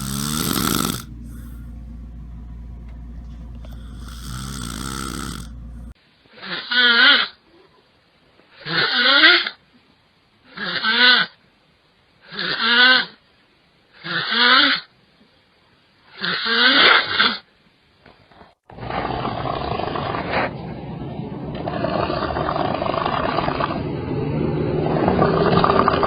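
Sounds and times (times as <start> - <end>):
person snoring: 0.0 - 1.8, 3.5 - 6.0
steady rough noise: 0.0 - 6.0.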